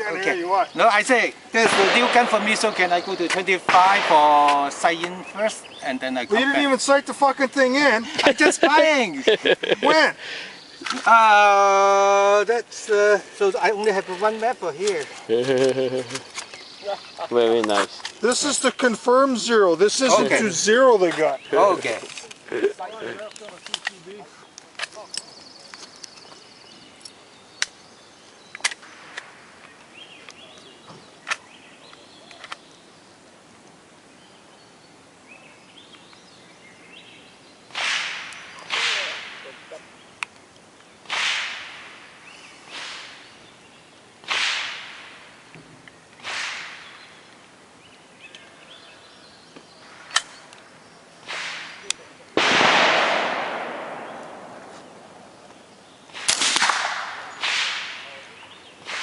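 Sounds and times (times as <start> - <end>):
gunshots with echo: 1.6 - 5.1, 37.7 - 39.7, 41.1 - 42.0, 44.2 - 45.2, 52.4 - 54.7, 56.2 - 58.2.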